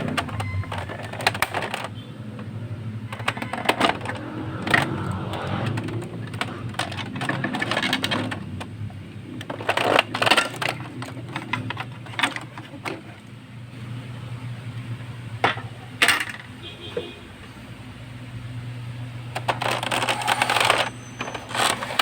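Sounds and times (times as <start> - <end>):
plastic parts clicking and knocking: 0.0 - 13.3, 19.3 - 22.0.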